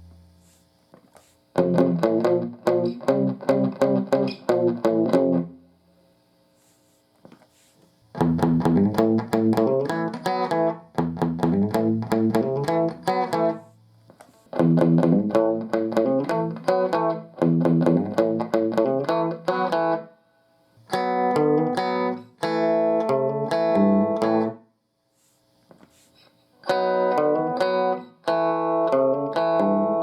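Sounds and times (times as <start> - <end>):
electric guitar note runs: 0.0 - 0.6.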